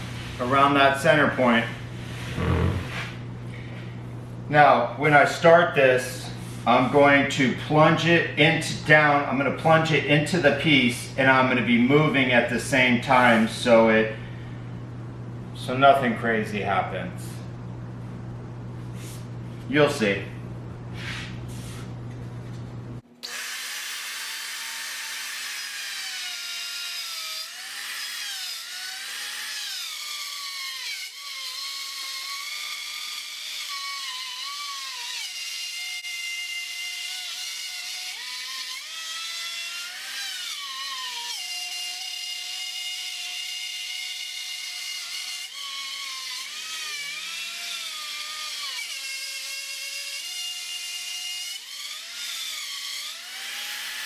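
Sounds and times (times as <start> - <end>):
router whining cutting wood: 23.2 - 54.0.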